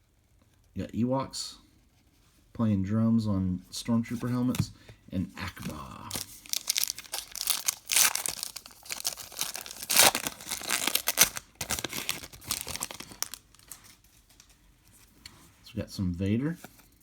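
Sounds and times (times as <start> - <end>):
wrapper tearing and crinkling: 6.0 - 14.0.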